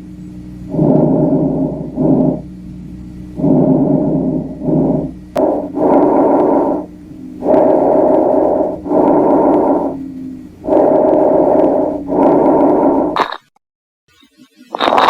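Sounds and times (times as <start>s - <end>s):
breathing through a stethoscope: 0.7s - 2.4s, 3.4s - 13.2s.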